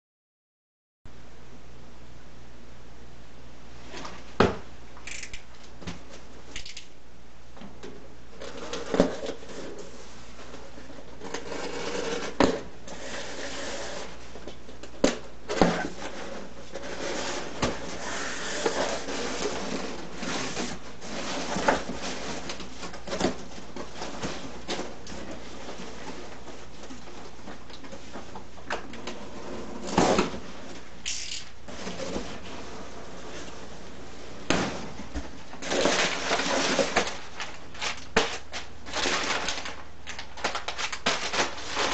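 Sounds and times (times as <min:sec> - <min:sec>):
packaging rustling: 0:34.6 - 0:41.9.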